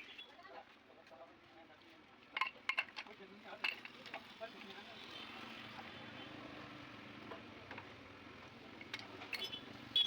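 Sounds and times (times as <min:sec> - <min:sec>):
faint background noise: 0:00.0 - 0:10.0
light metallic clicks and clinks: 0:02.4 - 0:04.3.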